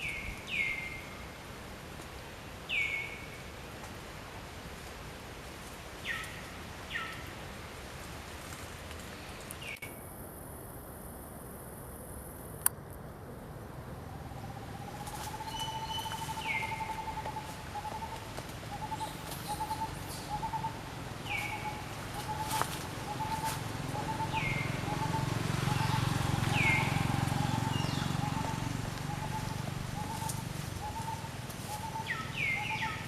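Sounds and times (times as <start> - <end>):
bird long wavering call: 13.9 - 33.0
bird high falling call: 14.7 - 33.0.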